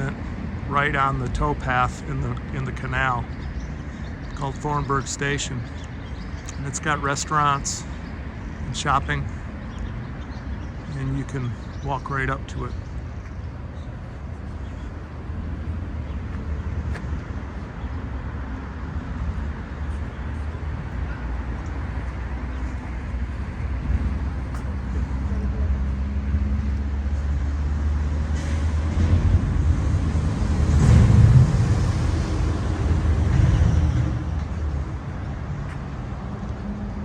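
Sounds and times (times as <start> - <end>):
road traffic rumbling: 0.0 - 37.0
vehicle passing: 10.6 - 37.0.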